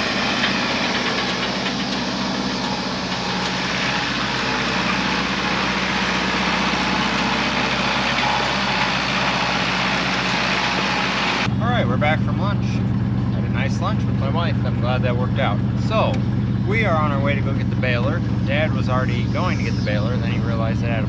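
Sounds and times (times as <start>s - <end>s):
tractor engine running steadily: 0.0s - 21.0s.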